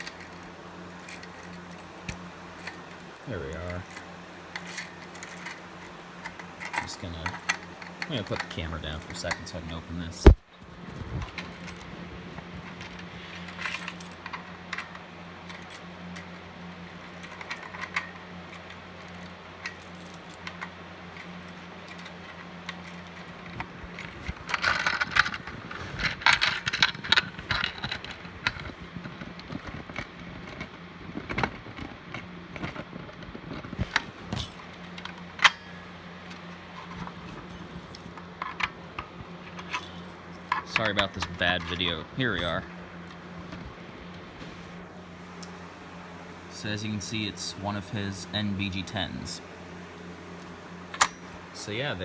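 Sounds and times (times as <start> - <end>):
metal clicks and clinks: 0.0 - 9.9, 11.2 - 30.7, 33.6 - 43.2, 50.4 - 51.8
faint low hum: 0.0 - 52.0
rattling clicks: 0.0 - 52.0.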